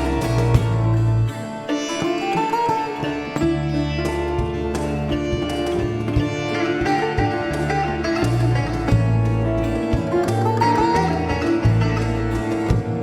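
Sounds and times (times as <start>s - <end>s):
held low bass notes: 0.0s - 1.4s, 7.2s - 13.0s
sitar melody: 0.0s - 13.0s.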